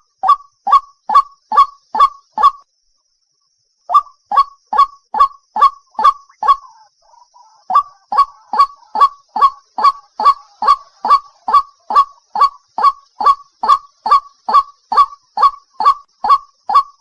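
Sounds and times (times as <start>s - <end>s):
water hen calling: 4.8s - 17.0s.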